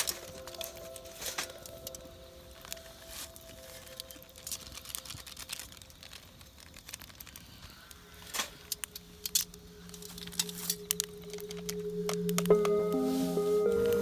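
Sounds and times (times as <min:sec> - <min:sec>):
low music tones: 0:00.0 - 0:05.1, 0:08.1 - 0:14.0
campfire crackling and popping: 0:00.0 - 0:14.0.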